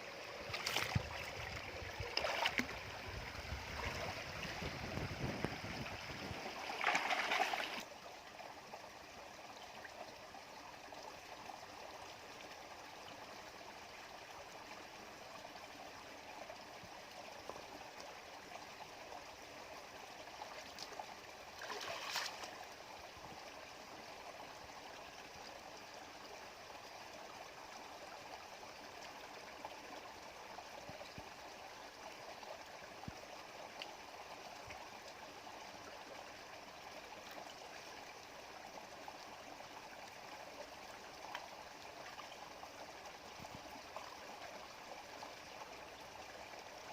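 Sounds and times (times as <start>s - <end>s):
stream running over stones: 0.0s - 46.9s
splashing disturbances in water: 6.6s - 7.8s.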